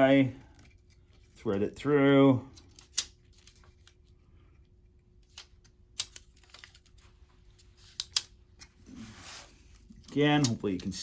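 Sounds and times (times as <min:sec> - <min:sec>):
faint steady hum: 0:00.0 - 0:11.0
plastic laptop parts clicking: 0:05.2 - 0:06.9.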